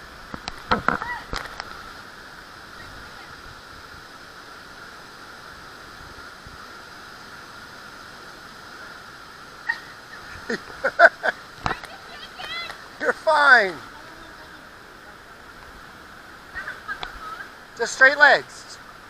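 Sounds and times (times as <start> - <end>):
river water rushing: 0.0 - 19.0.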